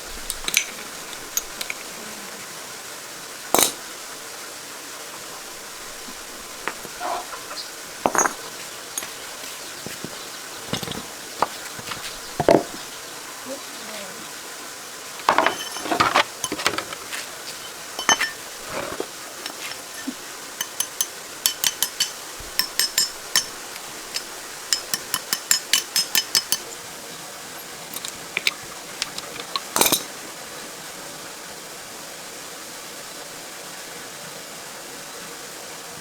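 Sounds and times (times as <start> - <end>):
metal clatter: 6.0 - 12.8, 15.2 - 26.8, 27.6 - 30.2
metallic clinks of hand tools: 15.2 - 26.8, 27.6 - 30.2.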